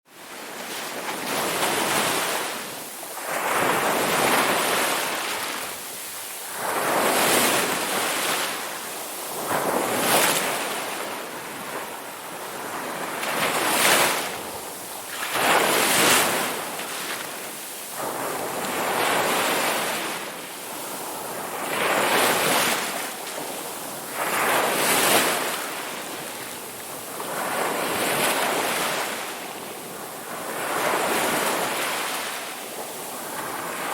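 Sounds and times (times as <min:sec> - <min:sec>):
ocean waves breaking on shore: 0:00.1 - 0:33.9.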